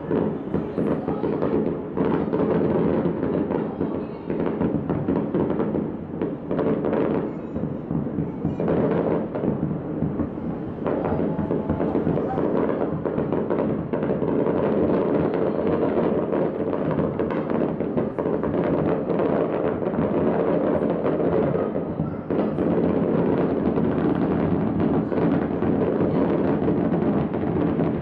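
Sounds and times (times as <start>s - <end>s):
firework shells bursting: 4.4s - 21.6s.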